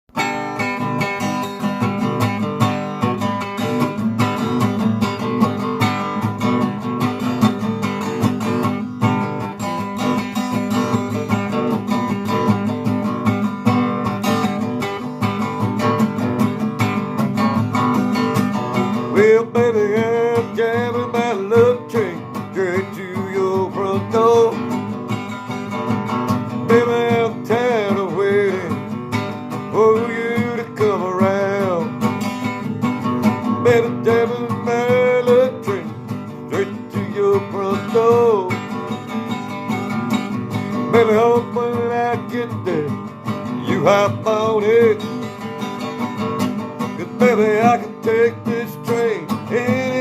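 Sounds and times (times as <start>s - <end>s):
acoustic guitar strumming chords: 0.1s - 50.0s.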